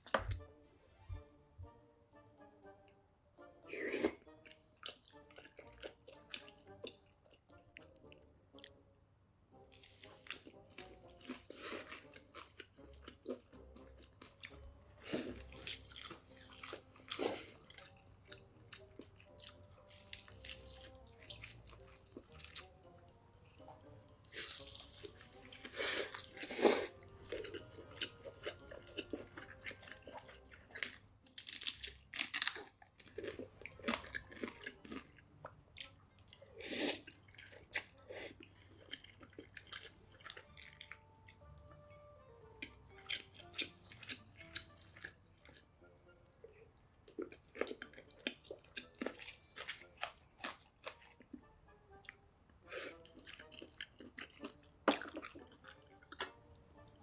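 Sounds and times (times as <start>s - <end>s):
crunchy chewing: 9.8s - 22.8s, 24.3s - 35.2s, 35.8s - 41.4s, 42.6s - 45.7s, 46.5s - 51.4s, 52.8s - 56.4s.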